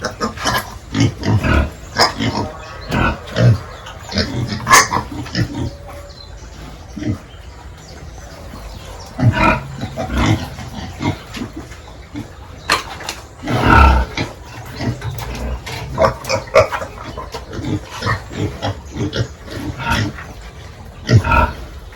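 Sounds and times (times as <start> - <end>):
pigs grunting: 0.0 - 21.9.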